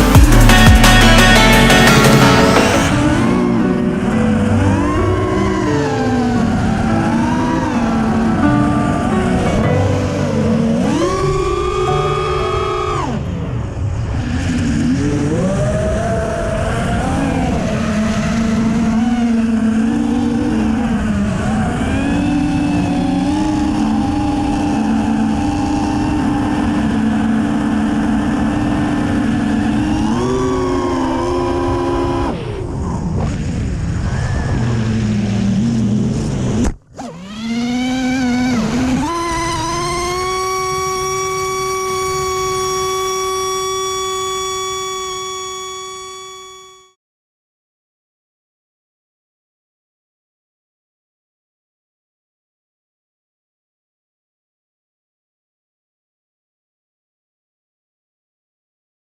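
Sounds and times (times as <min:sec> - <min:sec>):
drone motors whining: 0:00.0 - 0:47.0.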